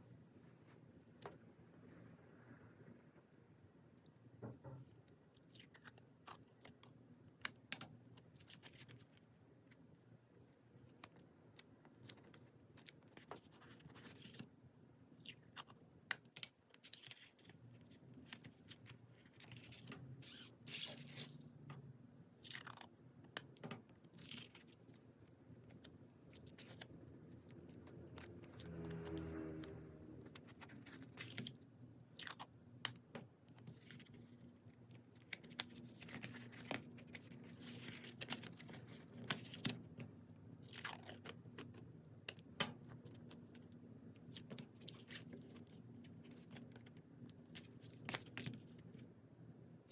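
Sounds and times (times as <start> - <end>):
low tonal drone: 28.5 - 30.4
packaging crinkling and rustling: 33.6 - 40.0.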